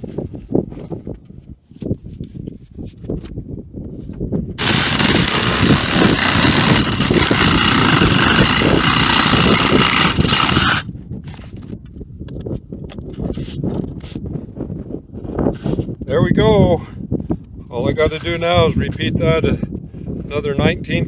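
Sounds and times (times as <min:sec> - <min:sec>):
power saw cutting wood: 0:04.6 - 0:10.9.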